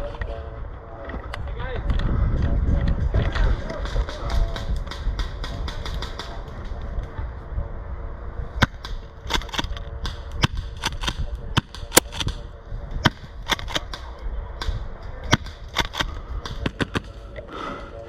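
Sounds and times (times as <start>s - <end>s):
low rumble: 0.0s - 18.0s
airsoft guns firing: 3.8s - 6.5s, 8.6s - 12.4s, 13.0s - 17.2s.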